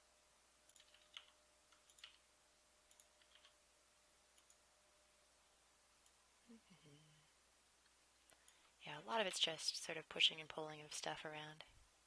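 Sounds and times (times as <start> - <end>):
computer mouse and keyboard clicks: 0.7 - 2.2, 2.9 - 3.6.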